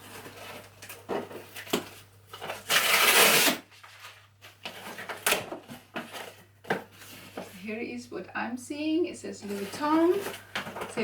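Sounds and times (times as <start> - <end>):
packaging tearing: 2.6 - 3.6.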